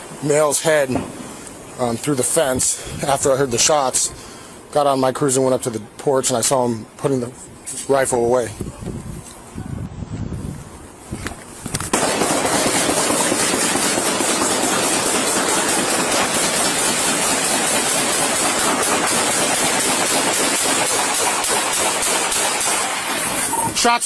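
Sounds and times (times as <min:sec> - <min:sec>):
fireworks and gunfire crackling: 0:00.4 - 0:01.4, 0:11.7 - 0:23.6.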